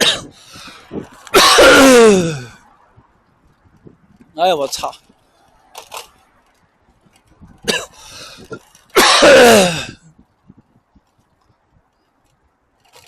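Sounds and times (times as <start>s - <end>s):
man coughing: 7.7s - 8.0s, 9.0s - 10.0s.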